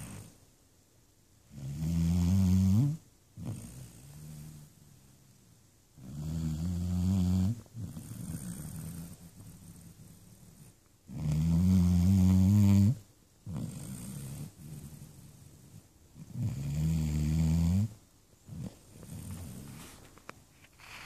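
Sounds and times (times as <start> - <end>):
puppy snoring loudly: 0.0 - 0.4, 1.5 - 5.4, 6.0 - 20.0
soft breathing: 7.5 - 10.9, 18.5 - 21.0.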